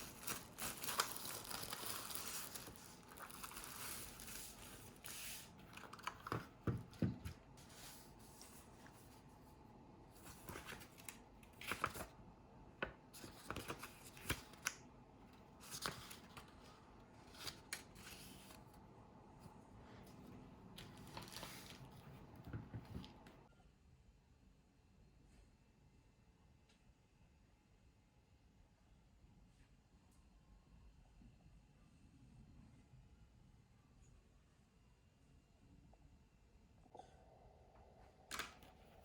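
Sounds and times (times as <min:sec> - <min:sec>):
packaging rustling: 0:00.0 - 0:08.7, 0:20.8 - 0:23.3.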